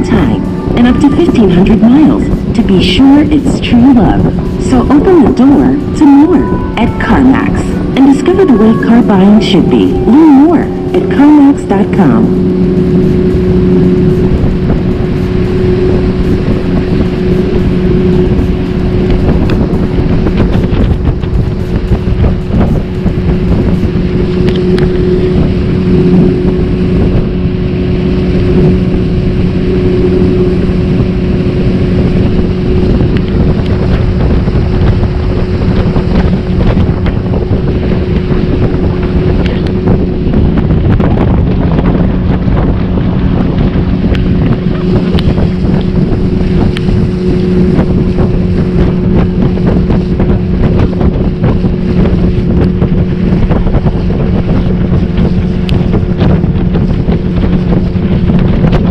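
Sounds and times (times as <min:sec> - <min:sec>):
motorboat engine running: 0:00.0 - 0:58.9
wind buffeting microphone: 0:00.0 - 0:58.9.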